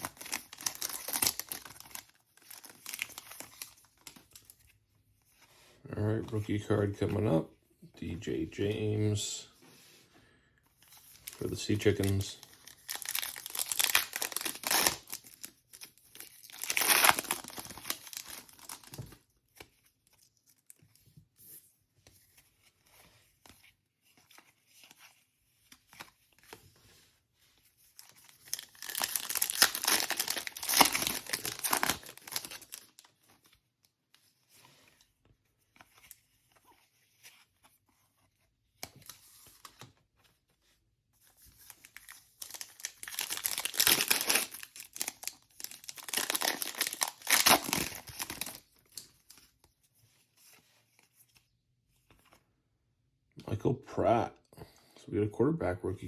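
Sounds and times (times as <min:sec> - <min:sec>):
foil wrappers tearing and crinkling: 0:00.0 - 0:04.1, 0:11.2 - 0:19.1, 0:28.0 - 0:33.1, 0:42.4 - 0:48.6.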